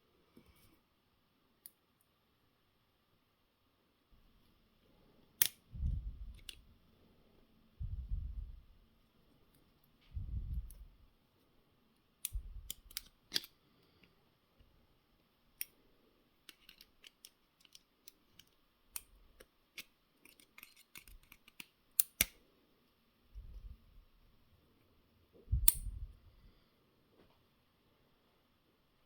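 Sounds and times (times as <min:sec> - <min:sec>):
small metal parts clicking: 0:12.2 - 0:13.5, 0:16.4 - 0:22.4.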